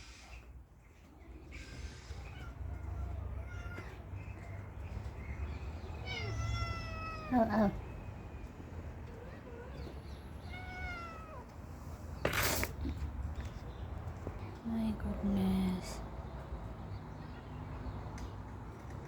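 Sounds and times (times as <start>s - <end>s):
cats meowing: 0.0s - 14.3s
rustling noise: 11.5s - 14.4s.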